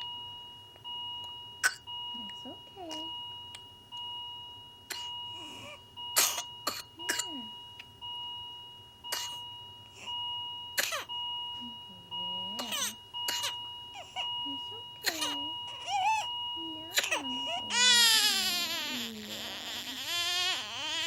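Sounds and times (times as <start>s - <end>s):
child coughing: 1.6s - 1.9s, 4.9s - 5.1s, 6.2s - 7.5s, 9.1s - 9.4s, 10.8s - 11.1s, 12.6s - 14.2s, 15.0s - 16.2s, 16.9s - 18.0s.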